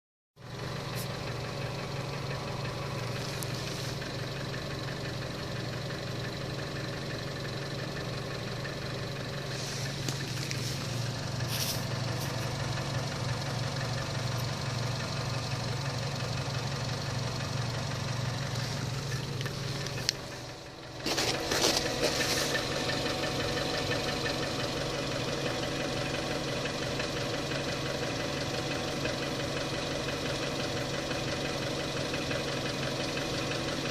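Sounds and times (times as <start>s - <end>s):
car engine idling: 0.4s - 33.9s
engine clicks: 0.7s - 33.9s.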